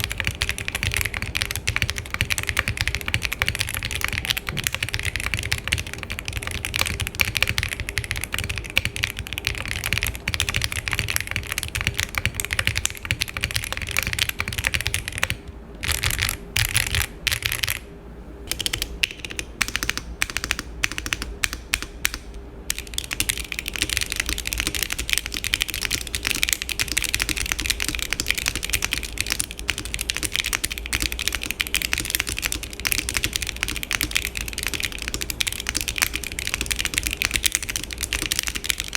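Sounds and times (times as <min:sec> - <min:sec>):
mechanical keyboard typing: 0:00.0 - 0:17.8, 0:18.5 - 0:38.9.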